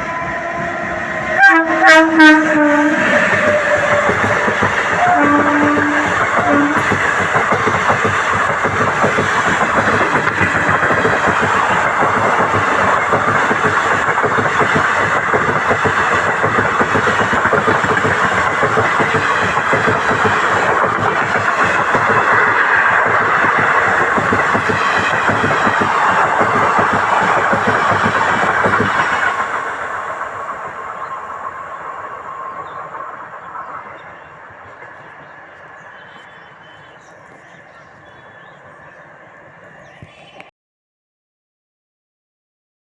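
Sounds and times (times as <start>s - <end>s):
train wheels rushing on rails: 0.0s - 40.2s.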